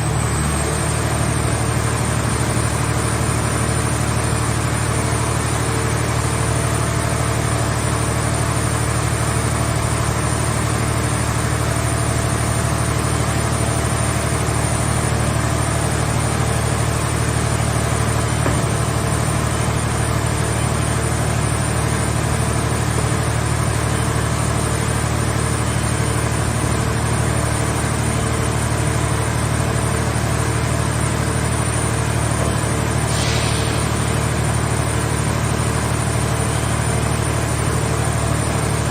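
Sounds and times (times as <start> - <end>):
hydraulic power unit running: 0.0 - 38.9
short hiss: 33.1 - 34.1.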